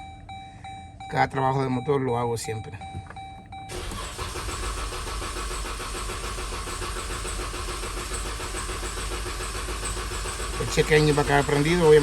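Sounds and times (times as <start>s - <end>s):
engine cranking on starter: 3.7s - 12.0s.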